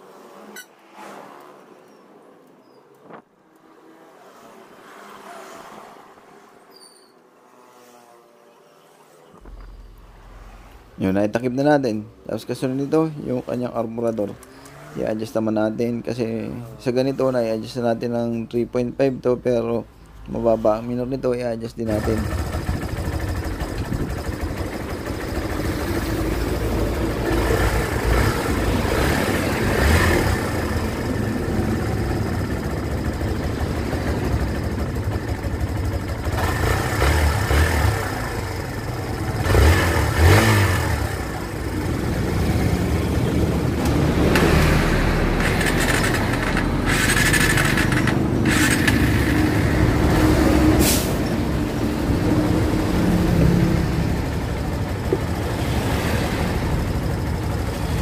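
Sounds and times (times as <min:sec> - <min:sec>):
motorcycle engine idling and revving: 0:09.4 - 0:11.3, 0:12.6 - 0:15.4, 0:21.8 - 0:58.0.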